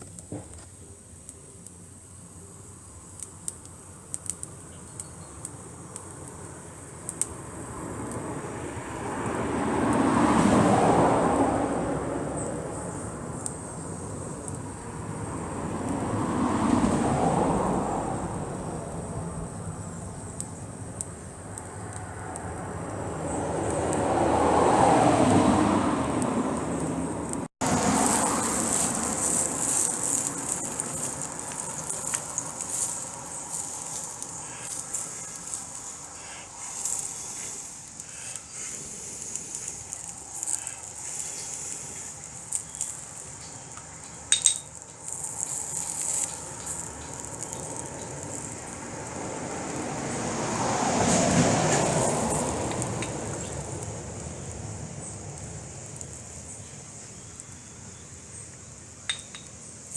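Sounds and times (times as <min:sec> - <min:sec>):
light crackles: 0:02.9 - 0:07.4, 0:26.8 - 0:50.2, 0:51.0 - 0:57.6
motor vehicle passing: 0:07.3 - 0:56.8
steady high hiss: 0:27.6 - 0:49.2.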